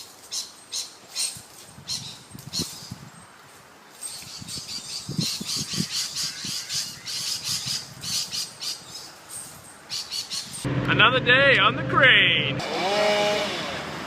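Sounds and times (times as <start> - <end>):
birds squawking: 4.2 - 9.1, 9.9 - 10.6.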